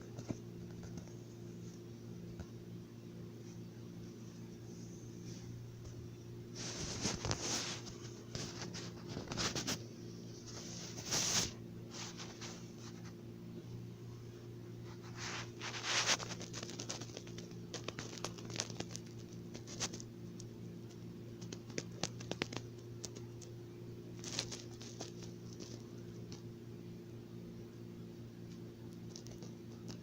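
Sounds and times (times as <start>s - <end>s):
steady low hum: 0.0s - 30.0s
rustling on fabric: 3.4s - 13.2s, 14.7s - 20.1s, 24.2s - 25.9s.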